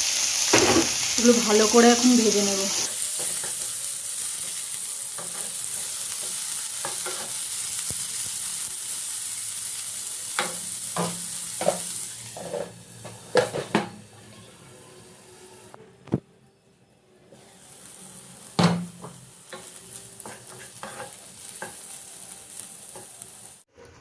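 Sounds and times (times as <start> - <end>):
vegetables sizzling in hot oil: 0.0 - 14.0, 17.4 - 23.7
spatula scraping and knocking pan: 10.4 - 13.9, 18.6 - 21.9.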